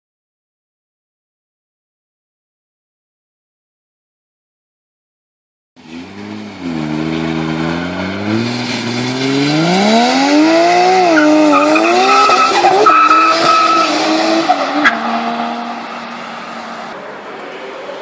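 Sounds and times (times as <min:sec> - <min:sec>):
car engine revving: 0:05.8 - 0:17.0.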